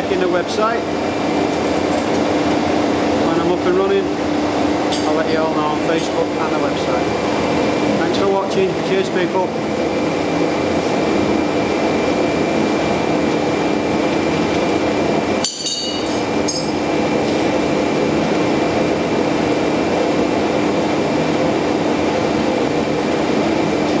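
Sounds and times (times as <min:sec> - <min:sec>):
air compressor humming: 0:00.0 - 0:24.0
metallic clink: 0:15.4 - 0:16.8.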